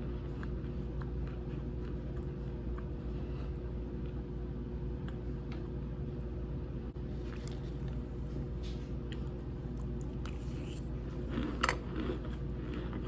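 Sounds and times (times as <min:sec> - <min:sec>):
cornstarch being chewed: 0:00.0 - 0:04.2, 0:07.1 - 0:13.0
steady low hum: 0:00.0 - 0:13.0.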